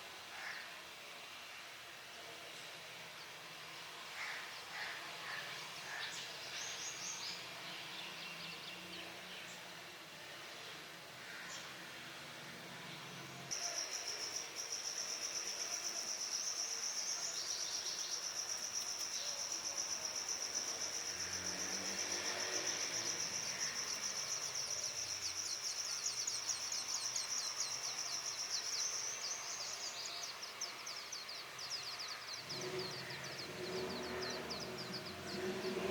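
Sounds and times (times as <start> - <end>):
nestlings begging with shrill buzzing: 13.5 - 35.9.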